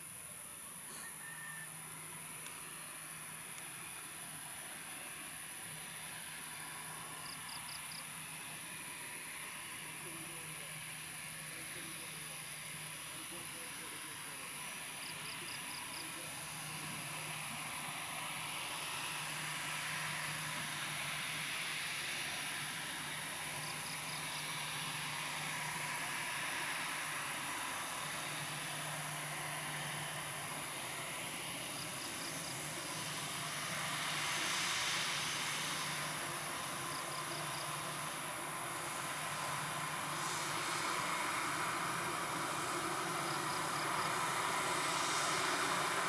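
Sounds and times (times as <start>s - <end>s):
jet engines running: 1.7s - 46.0s
insects chirping: 5.8s - 8.6s, 12.4s - 46.0s.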